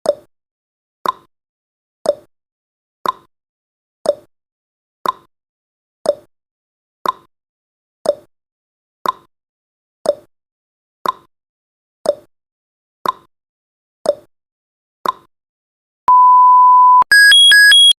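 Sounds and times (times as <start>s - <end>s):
steady electronic beep: 16.1s - 18.0s
high-pitched electronic alarm: 16.9s - 18.0s.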